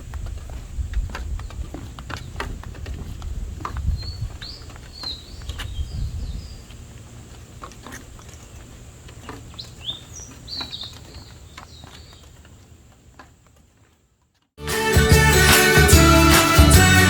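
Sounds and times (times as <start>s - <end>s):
birds chirping and whistling: 3.9s - 6.6s.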